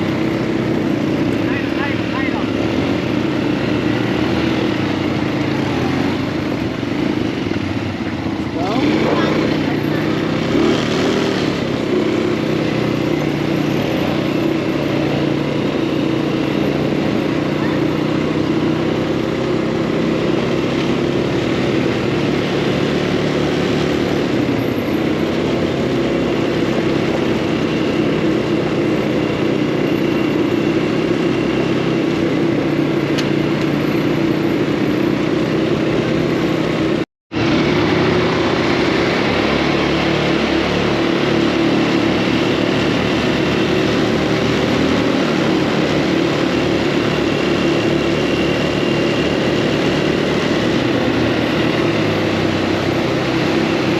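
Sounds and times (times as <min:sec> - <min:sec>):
off-road buggy engine running: 0:00.0 - 0:53.9.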